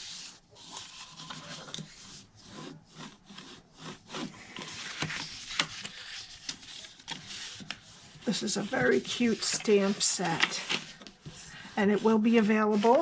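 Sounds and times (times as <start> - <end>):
cardstock being rubbed and creased: 0.0 - 13.0.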